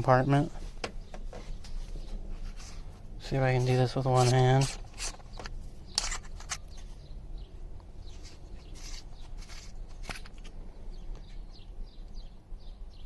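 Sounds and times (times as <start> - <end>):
clicks and scrapes of metal twisting: 3.5 - 6.9.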